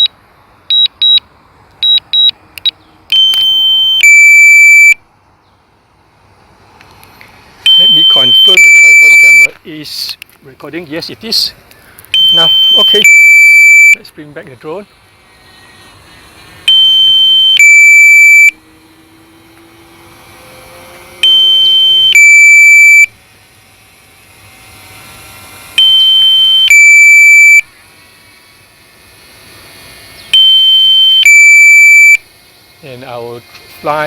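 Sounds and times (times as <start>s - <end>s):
two-tone electronic alarm beeps: 0.7s - 5.0s, 7.7s - 9.6s, 12.1s - 14.1s, 16.7s - 18.6s, 21.2s - 23.1s, 25.8s - 27.7s, 30.3s - 32.3s.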